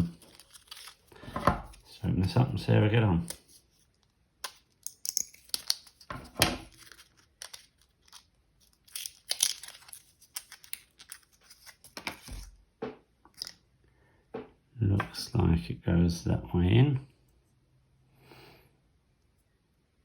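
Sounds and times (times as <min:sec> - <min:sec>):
packaging crinkling and tearing: 0:00.0 - 0:02.4, 0:03.2 - 0:12.5.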